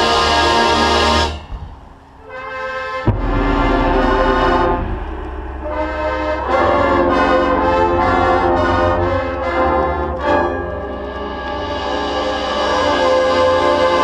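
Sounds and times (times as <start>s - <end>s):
brass band playing chords: 2.3s - 14.0s
low bass notes: 3.0s - 13.6s.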